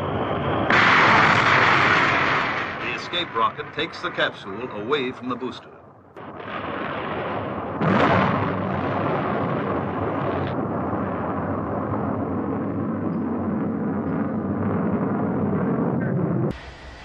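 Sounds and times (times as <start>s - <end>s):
rocket roar: 0.0s - 17.0s.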